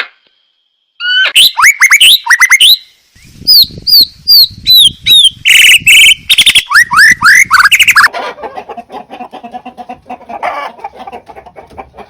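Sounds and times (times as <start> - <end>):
bird clucking calls: 6.5 - 12.0.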